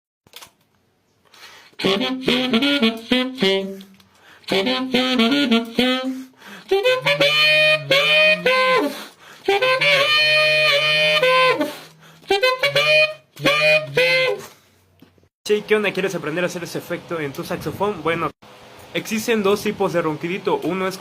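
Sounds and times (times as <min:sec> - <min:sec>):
saxophone growling melody: 0:01.8 - 0:14.6.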